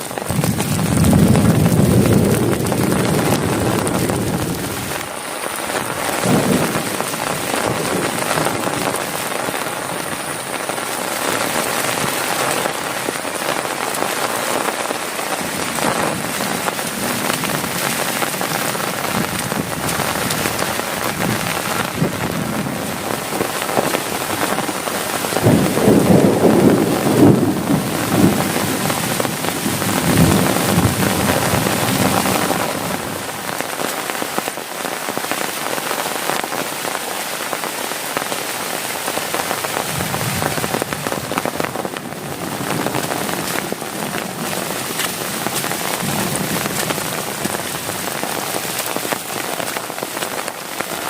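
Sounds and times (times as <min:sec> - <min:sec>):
heavy rain on a tent: 0:00.0 - 0:51.0
low rumble of thunder: 0:00.2 - 0:05.0, 0:05.8 - 0:09.2, 0:14.7 - 0:33.4, 0:39.8 - 0:49.0.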